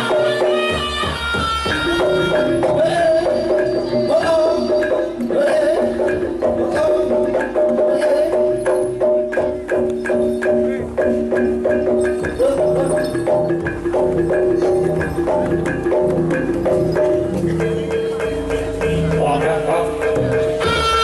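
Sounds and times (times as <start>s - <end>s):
gamelan music: 0.0s - 21.0s.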